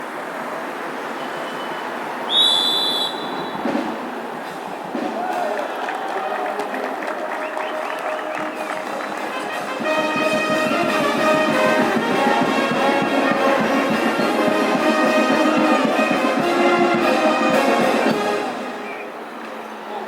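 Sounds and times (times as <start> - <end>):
drum beats: 3.3 - 18.9
brass band playing: 7.3 - 19.1.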